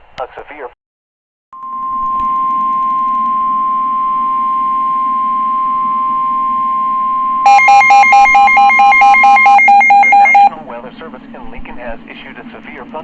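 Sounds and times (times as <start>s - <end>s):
alternating two-pitch beeping: 1.6s - 10.6s
steady high-pitched alarm tone: 1.6s - 11.2s.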